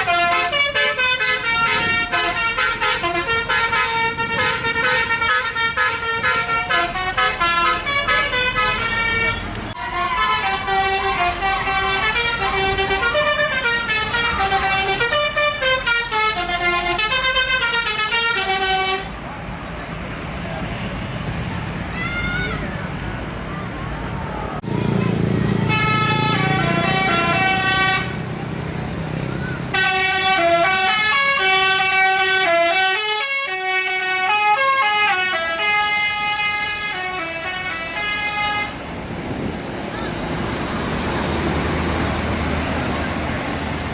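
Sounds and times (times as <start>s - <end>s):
bus horn playing melody: 0.0s - 19.2s, 25.6s - 28.3s, 29.7s - 38.9s.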